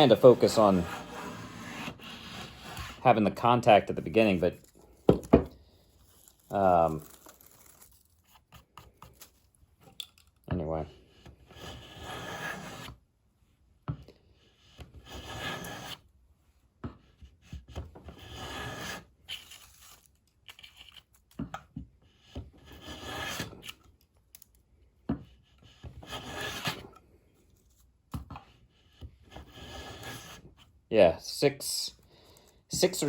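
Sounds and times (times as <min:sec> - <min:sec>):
hand plane shaving wood: 0:00.0 - 0:04.7, 0:11.5 - 0:13.0, 0:15.0 - 0:16.0, 0:18.1 - 0:19.1, 0:22.2 - 0:23.8, 0:25.4 - 0:26.9, 0:28.8 - 0:30.6.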